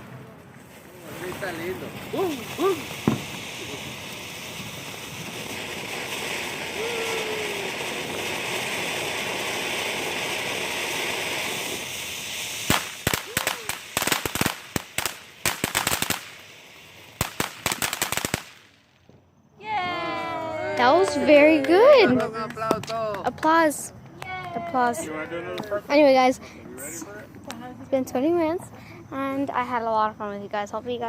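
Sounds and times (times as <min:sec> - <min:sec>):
firework fountain hissing: 0:00.0 - 0:31.0
rapid crackling pops: 0:00.5 - 0:16.5, 0:17.1 - 0:19.1.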